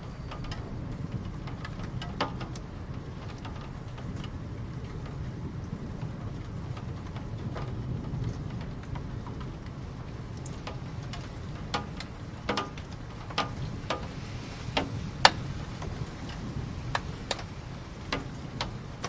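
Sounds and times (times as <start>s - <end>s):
raindrops tapping on hard surface: 0.0s - 19.0s.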